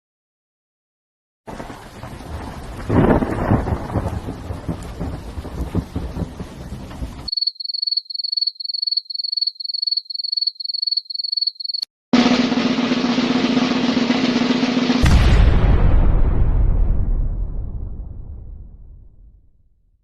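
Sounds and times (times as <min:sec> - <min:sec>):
rain: 0:01.5 - 0:07.3
thunder rumble: 0:01.5 - 0:07.3, 0:12.2 - 0:19.5
crickets chirping: 0:07.3 - 0:11.9.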